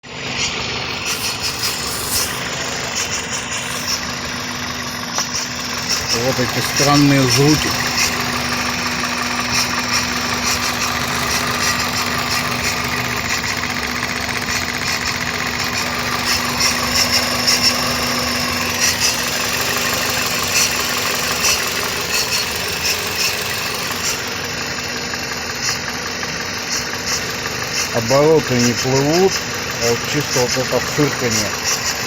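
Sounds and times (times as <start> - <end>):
car engine idling: 0.0 - 32.0
engine misfire pops: 0.3 - 24.9.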